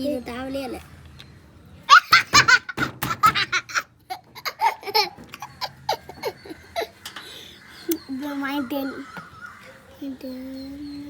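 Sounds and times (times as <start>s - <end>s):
children laughing: 1.8s - 10.3s.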